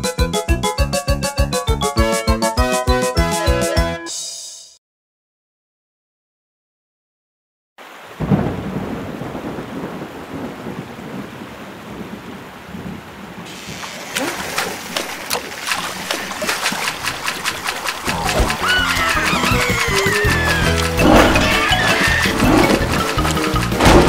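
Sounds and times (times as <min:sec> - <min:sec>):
rain drops hitting: 0:07.8 - 0:24.0
thunderclap rumbling: 0:08.1 - 0:13.5, 0:16.2 - 0:24.0.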